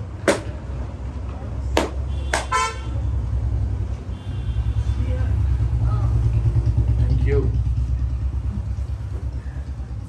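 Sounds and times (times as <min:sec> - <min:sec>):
street traffic rumble: 0:00.0 - 0:10.0
vehicle horn toot: 0:02.1 - 0:03.1, 0:04.1 - 0:05.0.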